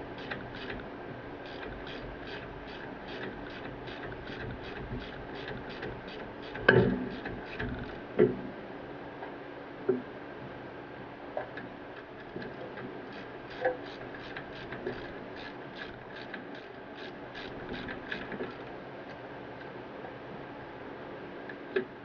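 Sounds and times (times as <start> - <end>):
ratchet wrench clicking: 13.1 - 18.3.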